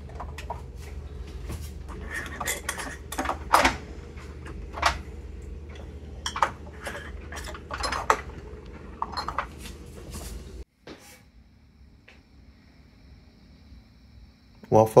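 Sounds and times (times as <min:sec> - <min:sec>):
steady low hum: 0:00.0 - 0:15.0
glass bottles clinking: 0:01.9 - 0:09.8.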